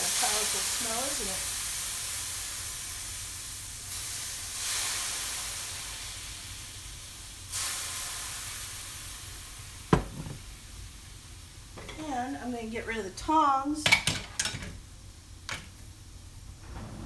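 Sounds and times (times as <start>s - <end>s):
liquid sizzling in a hot skillet: 0.0s - 12.6s.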